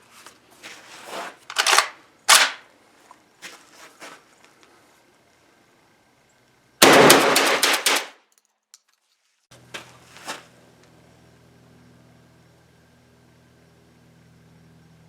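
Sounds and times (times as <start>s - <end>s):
shotgun shots: 6.8s - 8.2s.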